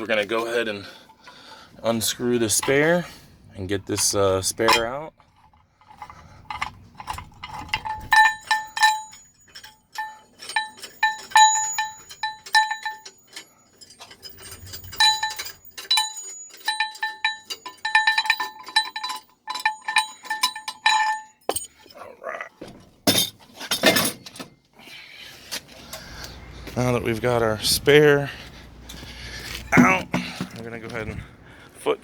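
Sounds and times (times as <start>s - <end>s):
metal parts clinking: 0.1s - 3.2s, 3.8s - 22.2s, 22.8s - 24.6s.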